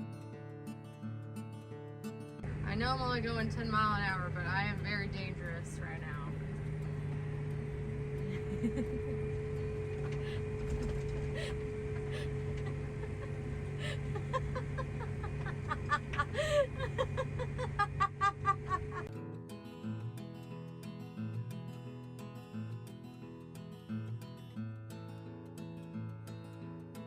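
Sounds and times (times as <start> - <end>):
music: 0.0 - 8.4, 19.1 - 27.0
vehicle engine running: 2.4 - 19.1
chickens clucking: 9.9 - 19.1.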